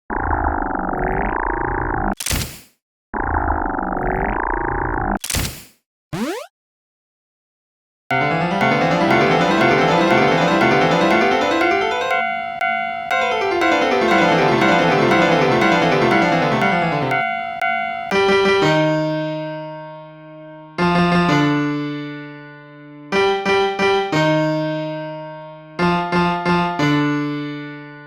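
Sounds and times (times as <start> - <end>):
piano runs and chords: 8.1 - 27.8.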